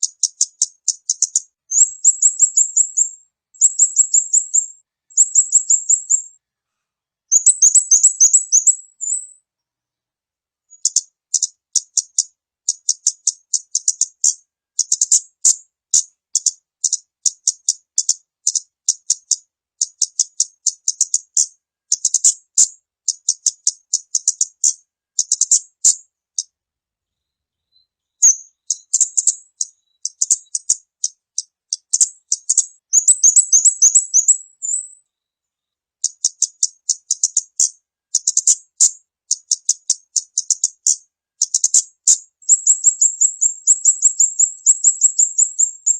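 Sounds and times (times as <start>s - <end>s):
bird chattering calls: 0.0s - 6.2s, 7.3s - 9.2s, 28.2s - 34.8s, 39.3s - 45.9s.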